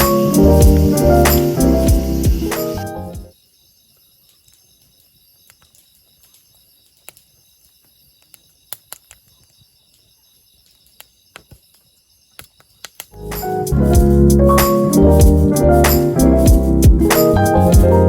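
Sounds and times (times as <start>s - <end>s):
insect chirring: 0.0s - 15.2s.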